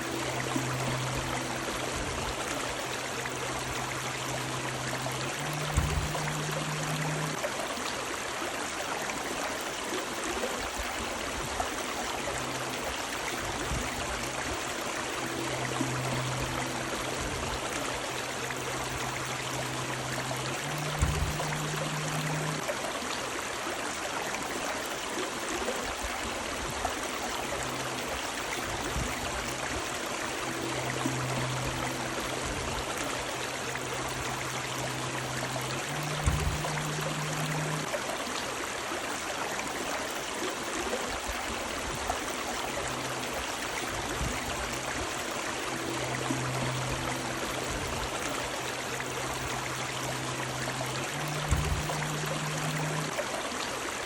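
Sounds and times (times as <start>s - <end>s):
faint low hum: 0.0s - 7.5s, 11.8s - 22.7s, 27.0s - 38.0s, 42.4s - 53.3s
river water rushing: 0.0s - 54.0s
soft thump: 5.6s - 6.3s.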